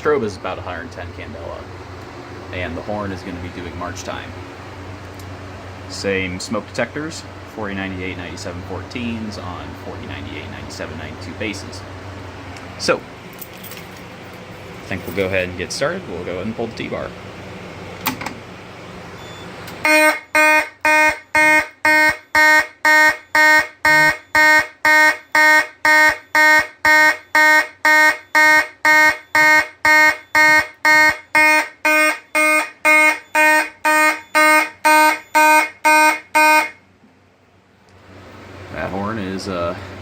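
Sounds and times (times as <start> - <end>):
fire alarm horn blasts: 19.2 - 36.9.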